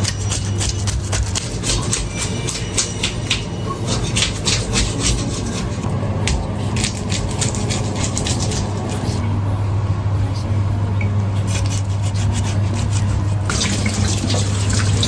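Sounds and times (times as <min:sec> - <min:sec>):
knife scraping fish scales: 0:00.0 - 0:05.8, 0:06.7 - 0:09.2, 0:11.5 - 0:15.0
steady low hum: 0:00.0 - 0:15.0.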